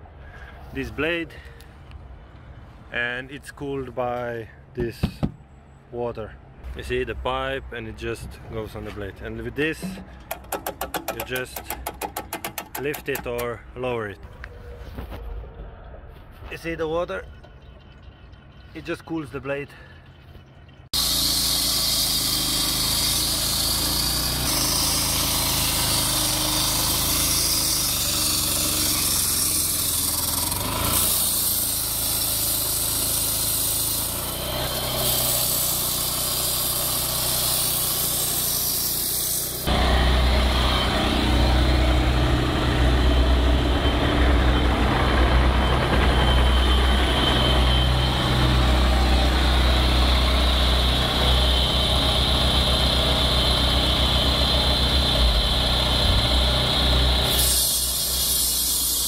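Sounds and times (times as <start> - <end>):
saw blade hissing cut: 21.0 - 44.4, 47.0 - 59.0
asphalt saw engine drone: 21.0 - 59.0.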